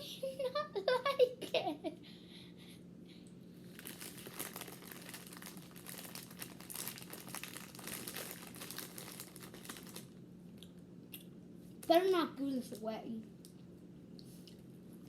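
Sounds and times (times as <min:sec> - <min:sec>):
plastic bag crinkling: 0:03.7 - 0:10.2.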